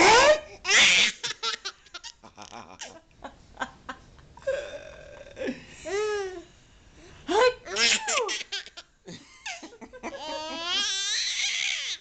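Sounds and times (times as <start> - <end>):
baby laughing: 0.6 - 3.0, 7.7 - 12.0.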